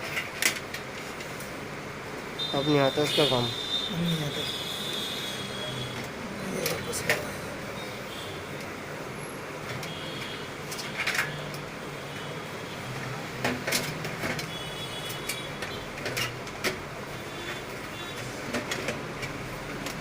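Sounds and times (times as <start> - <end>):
computer parts clicking and knocking: 13.4 - 16.9, 17.5 - 20.0.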